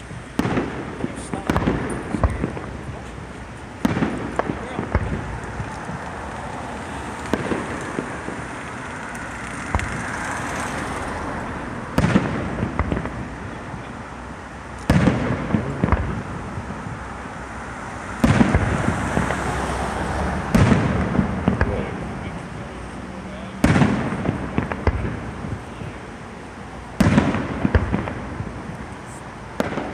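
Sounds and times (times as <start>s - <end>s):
firework shell bursts: 0.0s - 10.8s
small firework pops: 0.3s - 6.4s, 7.1s - 10.7s, 11.9s - 13.9s, 14.7s - 16.9s, 20.5s - 21.9s, 23.6s - 25.8s, 27.0s - 29.9s.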